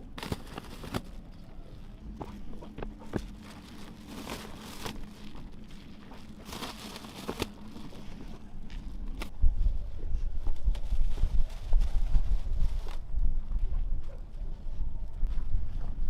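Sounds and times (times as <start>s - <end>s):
crinkling rustling handling: 0.0s - 9.4s
wind rumble on microphone: 8.1s - 16.0s.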